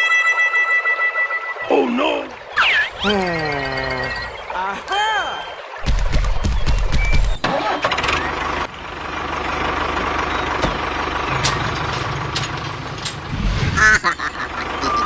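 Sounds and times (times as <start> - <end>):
tractor engine idling: 7.4 - 13.5.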